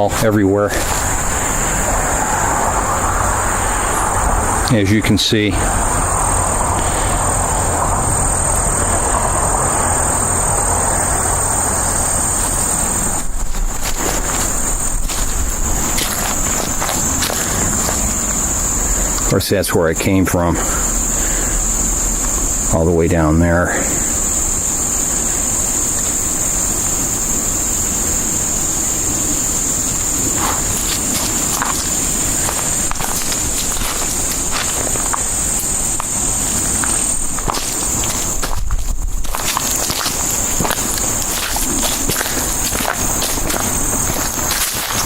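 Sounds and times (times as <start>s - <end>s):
wind rumble on microphone: 0.0s - 19.4s, 24.0s - 45.0s
crickets chirping: 0.0s - 45.0s
high-pitched insect chorus: 0.0s - 45.0s
low rumble: 0.1s - 19.3s.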